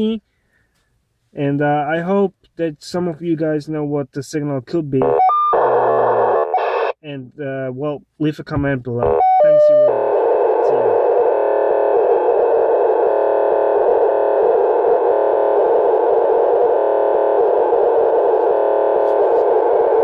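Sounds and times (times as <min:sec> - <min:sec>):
loud buzzing from radio speaker: 0:05.0 - 0:07.0, 0:09.0 - 0:20.0.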